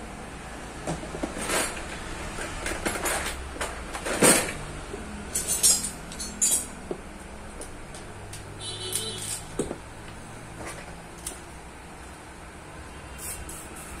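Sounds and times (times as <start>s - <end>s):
metal tools clicking and clinking: 1.4s - 4.6s, 5.3s - 6.9s, 7.6s - 9.6s.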